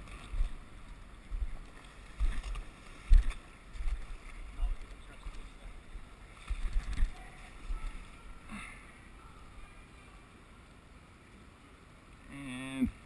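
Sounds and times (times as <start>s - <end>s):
flowing river water: 0.0s - 13.0s.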